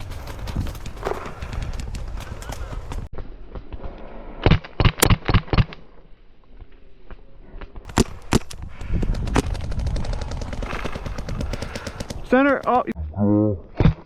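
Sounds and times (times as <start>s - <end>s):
distant rapid fire rattling: 7.9s - 12.9s.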